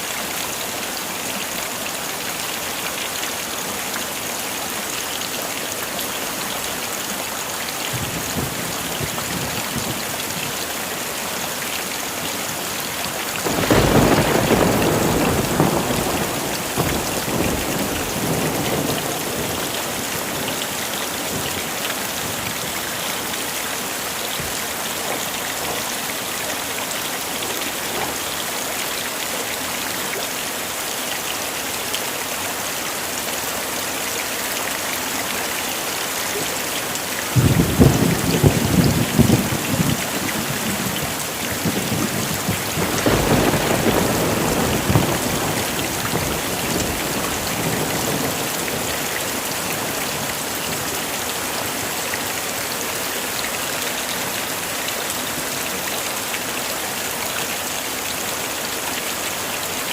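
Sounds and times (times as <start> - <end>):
heavy rain: 0.0 - 59.9
thunder clap rumbling: 13.4 - 20.6, 37.4 - 49.1.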